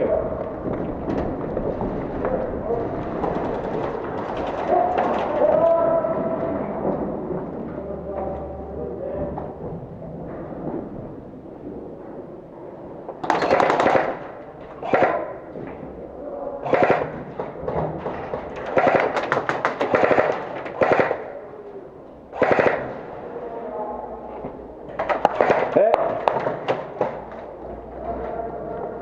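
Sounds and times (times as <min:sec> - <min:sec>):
airsoft gun bursts: 0:13.2 - 0:15.3, 0:16.6 - 0:17.2, 0:18.7 - 0:21.4, 0:22.3 - 0:23.0, 0:25.1 - 0:26.8.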